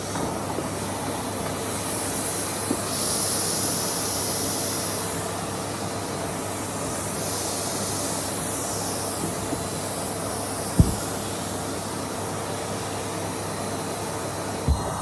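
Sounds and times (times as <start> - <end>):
vacuum suction hiss: 0.0 - 15.0
vacuum cleaner motor hum: 6.7 - 12.1, 12.8 - 15.0.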